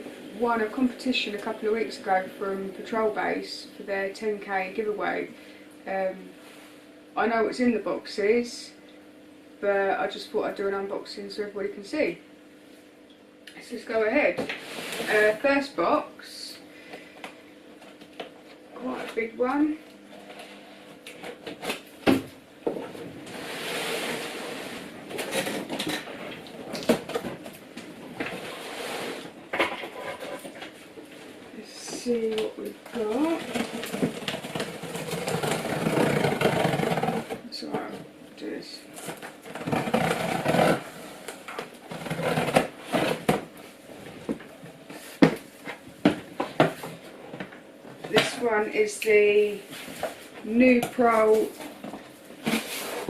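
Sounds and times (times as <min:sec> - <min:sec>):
packaging scraping and rustling: 0:23.2 - 0:27.6, 0:28.2 - 0:30.8, 0:33.0 - 0:37.4, 0:39.0 - 0:43.5
cardboard rasping: 0:33.0 - 0:37.4, 0:39.0 - 0:43.4.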